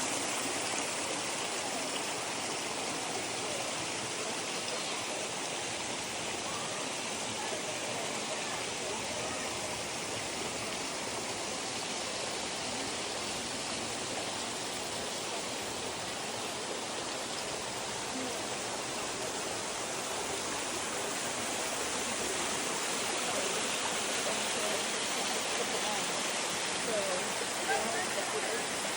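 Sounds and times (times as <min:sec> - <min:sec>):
waterfall rushing: 0:00.0 - 0:28.9.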